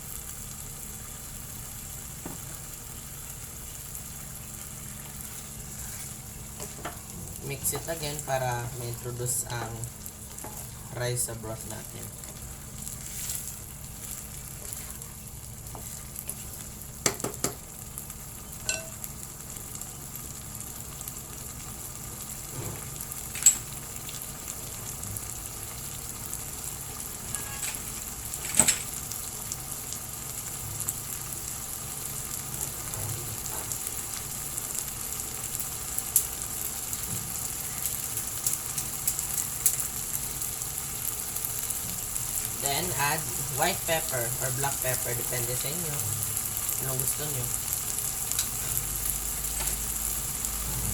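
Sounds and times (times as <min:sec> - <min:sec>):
food sizzling in a pot: 0:00.0 - 0:50.9
utensil clinking against pot: 0:18.7 - 0:19.0.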